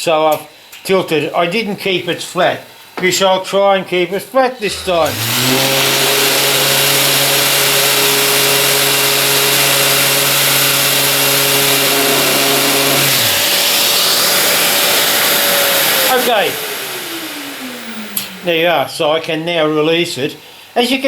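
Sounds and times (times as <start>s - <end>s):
sander running: 4.6s - 18.8s
vacuum pump hiss: 4.6s - 19.1s.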